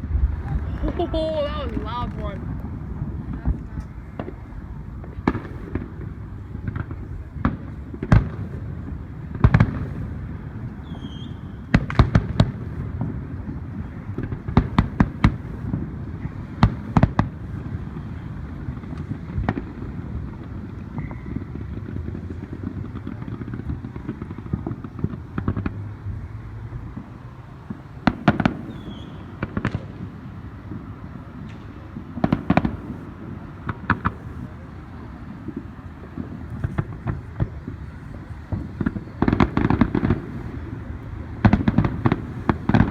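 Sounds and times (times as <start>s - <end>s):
steady low rumble: 0.0s - 10.8s
fireworks bangs and crackles: 0.0s - 42.9s.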